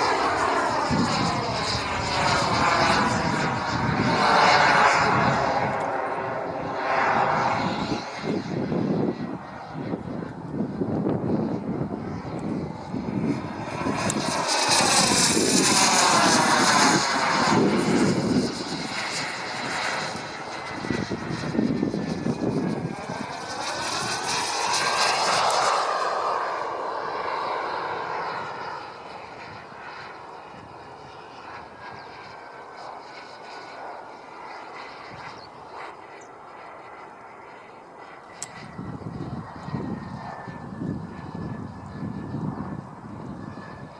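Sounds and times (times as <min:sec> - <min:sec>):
model jet flying past: 0:00.0 - 0:43.9.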